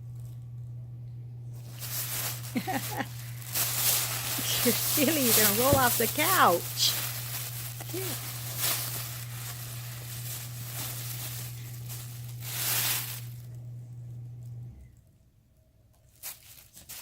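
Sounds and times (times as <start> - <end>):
steady low hum: 0.0 - 15.9
rustling of handled object: 1.6 - 13.5, 16.1 - 17.0.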